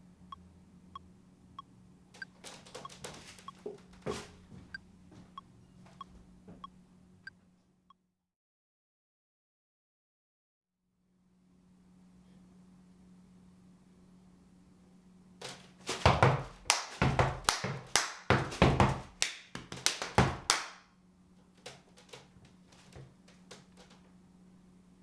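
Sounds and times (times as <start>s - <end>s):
faint steady hum: 0.0s - 7.9s, 11.0s - 25.0s
stomping feet: 2.4s - 5.4s, 15.4s - 20.7s
hand claps: 16.0s - 20.8s.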